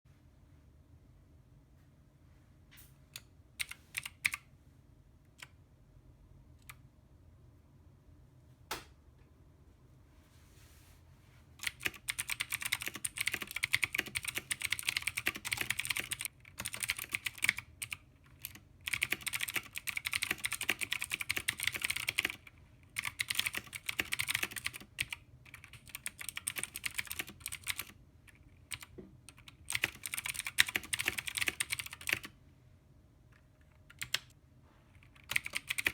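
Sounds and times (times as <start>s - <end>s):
mechanical keyboard typing: 3.2s - 4.4s, 11.6s - 32.3s, 33.7s - 34.3s, 35.0s - 35.9s.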